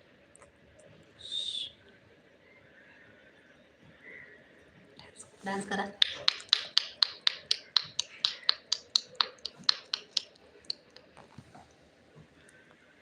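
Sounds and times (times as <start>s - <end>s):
rapid finger snapping: 5.9s - 11.3s.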